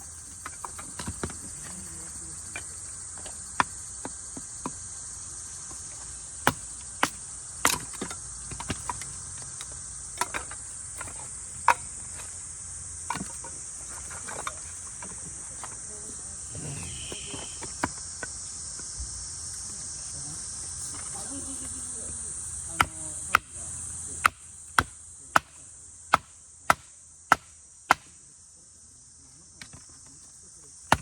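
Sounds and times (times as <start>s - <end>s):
crickets chirring: 0.0s - 31.0s.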